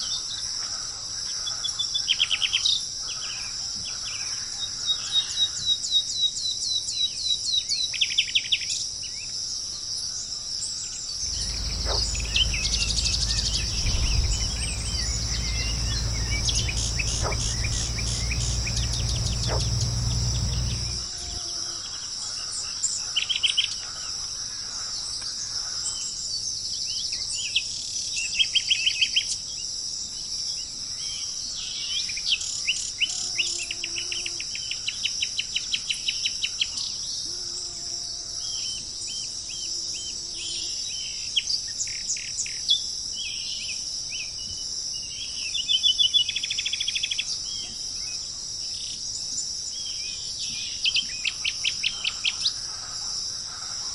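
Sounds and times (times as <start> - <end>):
birds chirping trills: 11.2 - 21.1
low drawn-out bird calls: 11.2 - 21.2
insect drone: 11.2 - 21.9.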